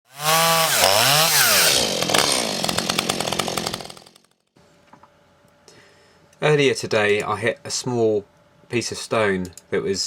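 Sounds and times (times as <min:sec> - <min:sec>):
chainsaw engine winding down: 0:00.1 - 0:04.3
chainsaw chain clatter: 0:00.3 - 0:04.4.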